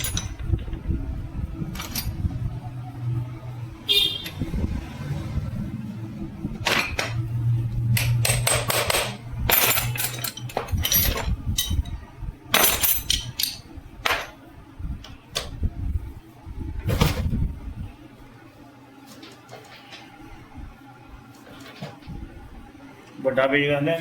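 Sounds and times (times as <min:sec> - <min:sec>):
low hum: 0:00.0 - 0:18.6.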